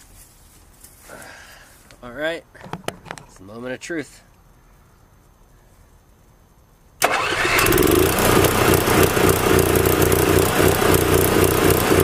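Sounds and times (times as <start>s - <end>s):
generator starting and running rough: 7.0s - 12.0s.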